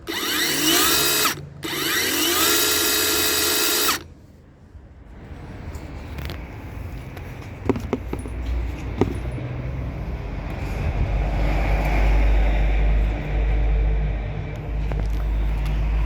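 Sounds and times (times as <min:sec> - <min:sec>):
cordless chainsaw running: 0:00.0 - 0:04.1.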